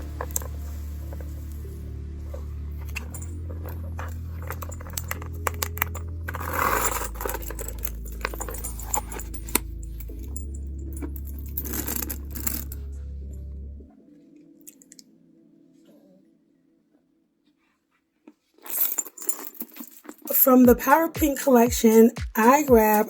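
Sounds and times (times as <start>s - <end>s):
wrapping rustling: 0.0s - 13.0s, 18.3s - 20.6s
background music with bass: 0.0s - 13.9s
metallic chain clinks: 2.3s - 13.1s, 18.6s - 21.0s.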